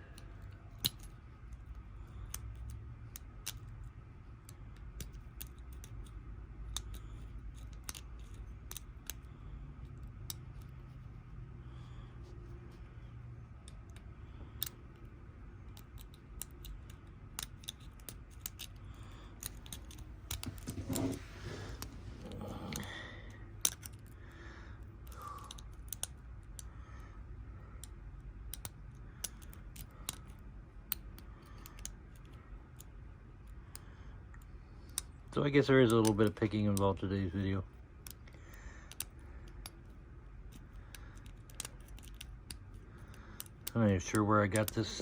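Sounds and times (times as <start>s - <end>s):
faint metallic lock picking clicks: 0.1s - 9.3s, 13.6s - 21.2s, 23.6s - 24.2s, 25.0s - 26.7s, 27.8s - 35.1s, 38.0s - 43.8s
handling scuffle: 20.3s - 22.6s.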